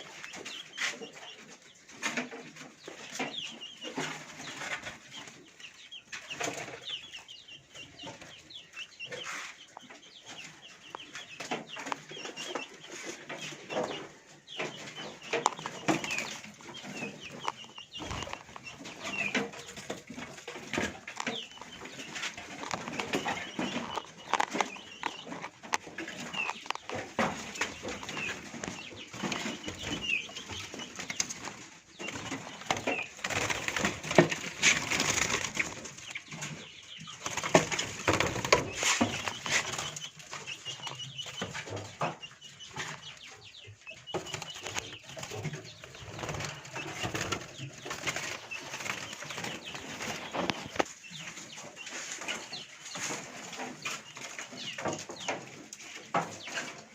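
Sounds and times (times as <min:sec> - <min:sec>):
birds fluttering in cages: 0:00.0 - 0:56.9
bird chirps: 0:02.8 - 0:55.4.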